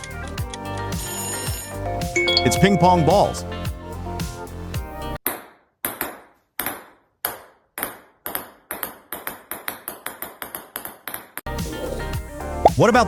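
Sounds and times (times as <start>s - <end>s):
ping pong ball bouncing: 2.2s - 3.2s.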